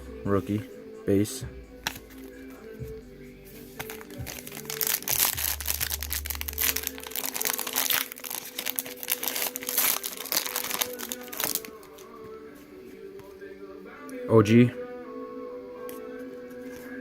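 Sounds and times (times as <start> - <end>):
faint background music: 0.0 - 17.0
foil wrapper crinkling: 3.8 - 12.3.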